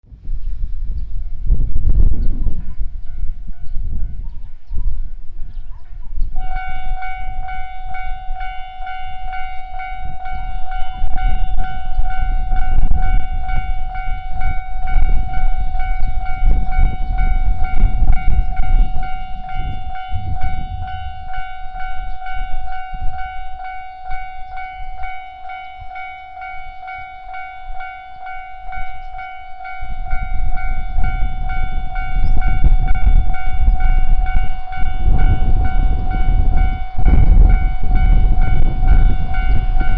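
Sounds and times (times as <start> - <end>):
heavy low rumble: 0.0 - 39.9
level-crossing alarm ringing: 6.4 - 39.9.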